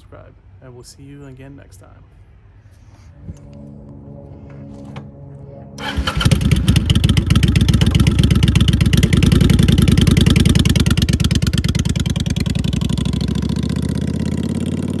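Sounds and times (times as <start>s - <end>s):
motorcycle engine idling: 5.8s - 15.0s.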